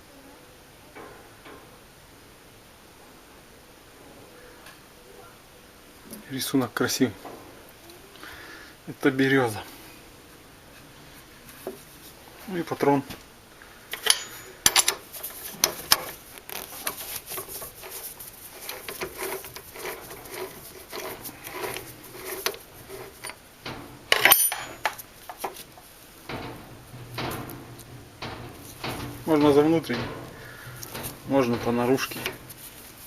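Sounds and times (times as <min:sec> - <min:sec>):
handling noise: 0:13.9 - 0:33.0
metal parts clinking: 0:13.9 - 0:33.0.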